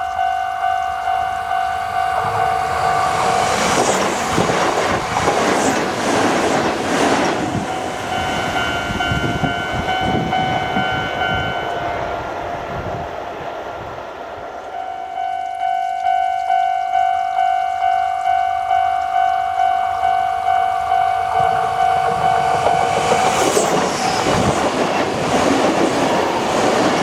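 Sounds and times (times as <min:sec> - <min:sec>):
level crossing warning bell: 0:00.0 - 0:03.8, 0:07.5 - 0:12.2, 0:14.7 - 0:23.9
train wheels clattering on rails: 0:02.0 - 0:11.5, 0:18.8 - 0:27.0.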